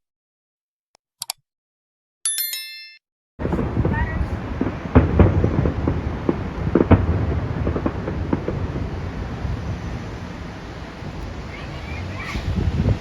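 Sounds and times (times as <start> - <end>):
fireworks bangs and crackles: 3.4 - 13.0
low rumble: 3.4 - 13.0.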